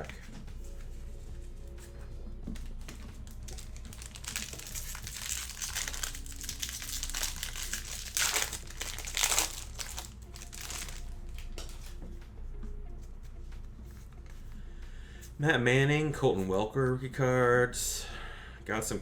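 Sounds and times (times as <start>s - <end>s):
card pack wrapper crinkling: 3.0s - 12.0s.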